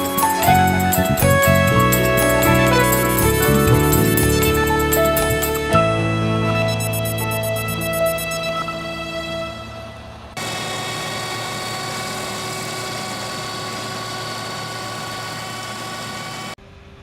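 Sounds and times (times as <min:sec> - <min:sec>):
harvester and tractor running: 0:08.8 - 0:17.0.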